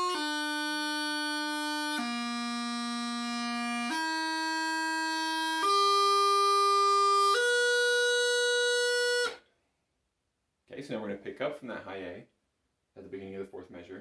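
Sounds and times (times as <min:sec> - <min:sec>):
bagpipe chanter held notes: 0:00.0 - 0:09.4.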